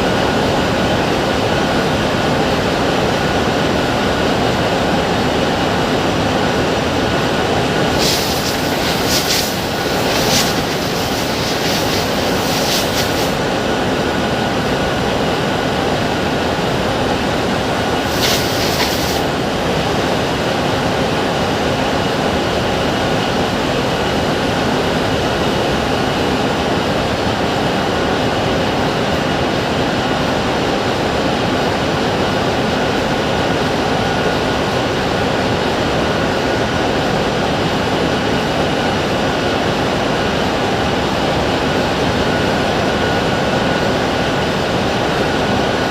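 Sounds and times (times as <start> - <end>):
heavy machinery running: 7.9 - 13.6
short high hiss: 7.9 - 13.6, 18.0 - 19.4.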